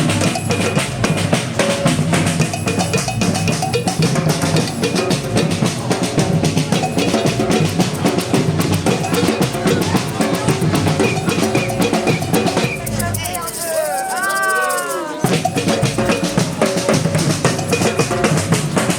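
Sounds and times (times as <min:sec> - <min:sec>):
deep bass drums: 0:00.0 - 0:13.5
snare drums: 0:00.0 - 0:18.9.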